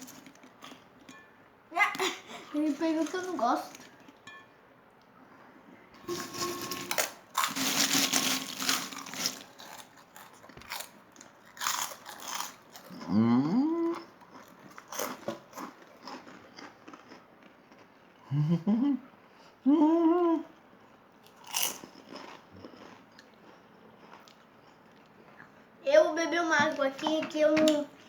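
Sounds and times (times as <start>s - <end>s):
crunching and chewing crisp food: 0.0s - 1.2s, 6.0s - 18.6s, 20.7s - 25.8s
person humming moo-like: 13.1s - 14.0s, 19.7s - 20.5s.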